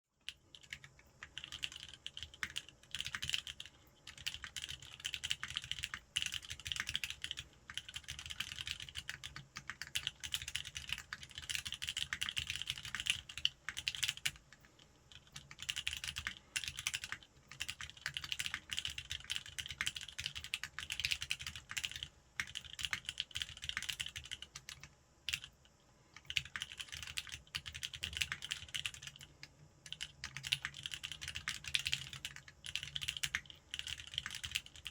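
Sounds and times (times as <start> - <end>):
mechanical keyboard typing: 0.2 - 25.6, 26.2 - 34.9.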